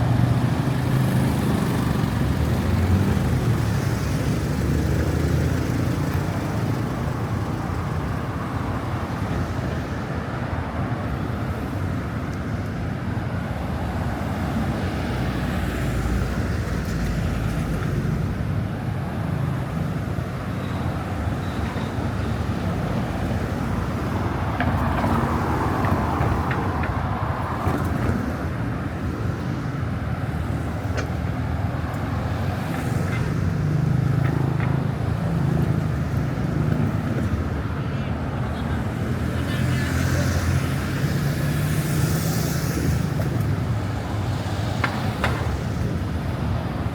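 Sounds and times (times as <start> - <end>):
city street traffic rumble: 0.0 - 46.9.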